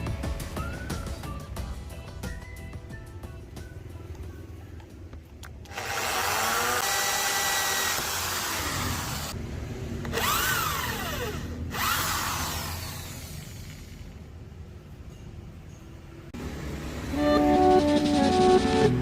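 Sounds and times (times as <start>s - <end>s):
electric drill whining: 5.6s - 9.4s, 10.1s - 14.2s.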